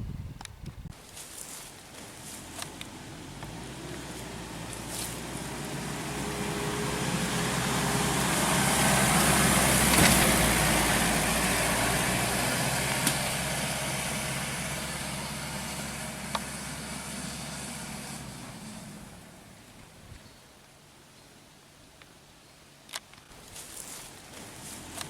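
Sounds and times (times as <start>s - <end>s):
vehicle driving past off-road: 1.9s - 20.0s, 24.0s - 25.0s.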